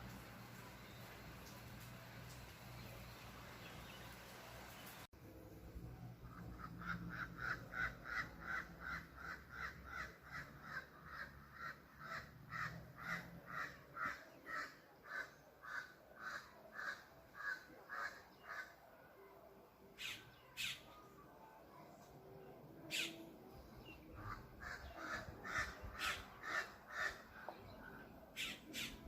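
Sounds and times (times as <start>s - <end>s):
bird giving harsh calls: 28.4s - 29.0s.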